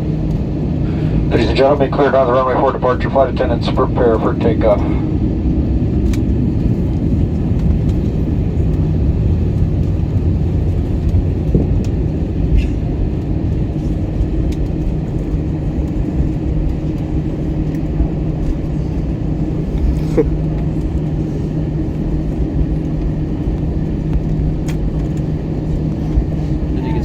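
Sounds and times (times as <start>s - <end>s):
airliner cabin rumble: 0.0s - 27.0s
jet engine hum: 0.0s - 27.0s.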